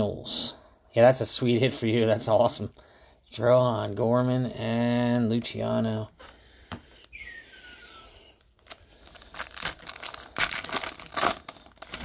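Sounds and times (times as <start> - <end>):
foil wrapper crinkling and tearing: 8.6 - 12.0.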